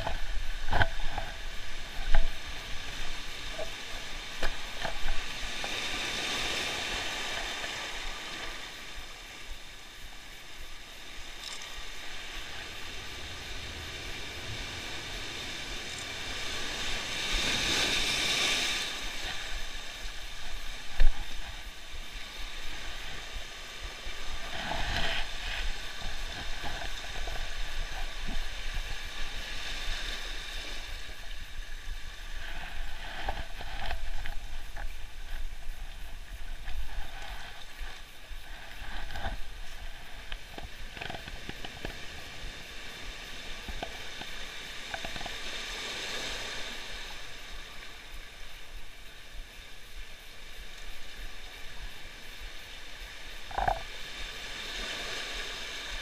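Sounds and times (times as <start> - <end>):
sea waves washing in: 0.0 - 56.0.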